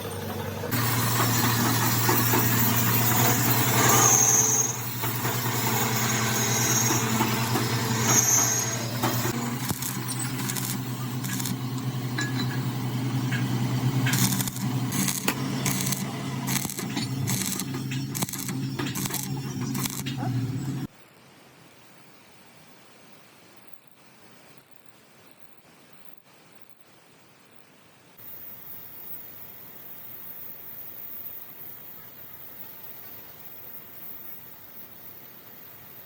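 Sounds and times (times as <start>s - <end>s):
workshop machine humming: 0.0s - 20.9s
loud rushing work noise: 0.1s - 20.9s
sharp clicks and knocks: 13.3s - 20.2s.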